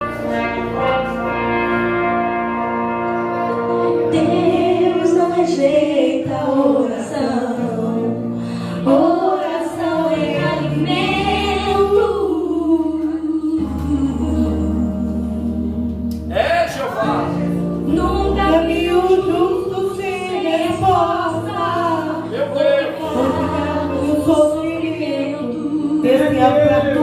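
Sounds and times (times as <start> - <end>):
sustained instrumental chords: 0.0 - 27.0
woman singing: 4.1 - 16.3, 17.9 - 22.3, 23.0 - 27.0.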